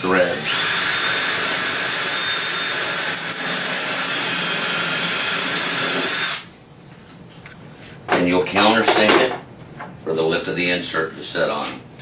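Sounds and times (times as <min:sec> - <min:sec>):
power drill whining under load: 0:00.0 - 0:06.5.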